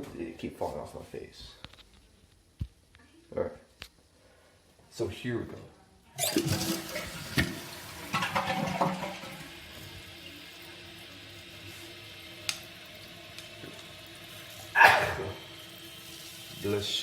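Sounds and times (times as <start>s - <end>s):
toilet flushing: 6.2s - 17.0s
toilet tank refilling hiss: 6.2s - 17.0s
person sneezing: 14.7s - 15.4s.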